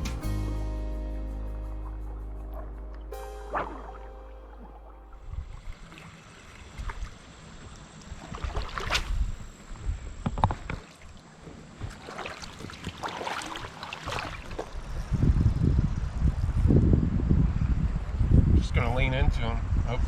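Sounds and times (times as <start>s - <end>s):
wind buffeting microphone: 14.4s - 20.0s.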